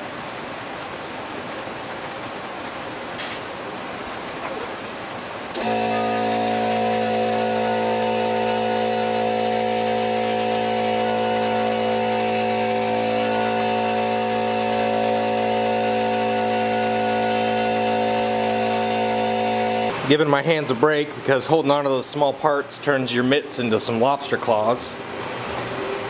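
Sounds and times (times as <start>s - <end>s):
motor hum: 5.5s - 20.2s
sandblasting hiss: 5.6s - 19.9s.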